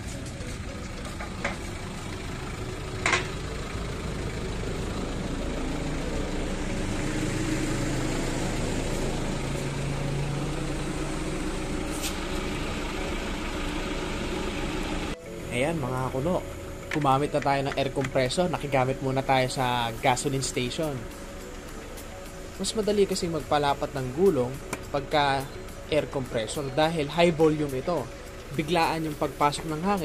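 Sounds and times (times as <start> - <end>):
motor humming: 0.0 - 20.3.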